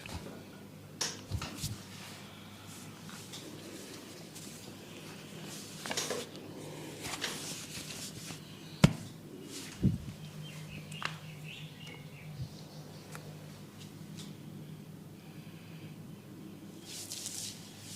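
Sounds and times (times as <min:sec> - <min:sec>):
hands rubbing hair and skin: 0:01.4 - 0:06.4, 0:07.0 - 0:08.4, 0:16.8 - 0:17.9.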